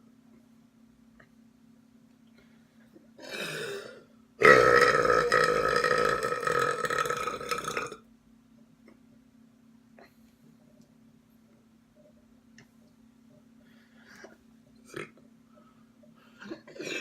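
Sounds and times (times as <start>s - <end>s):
person burping: 3.2s - 8.0s, 14.8s - 15.2s, 16.4s - 17.0s.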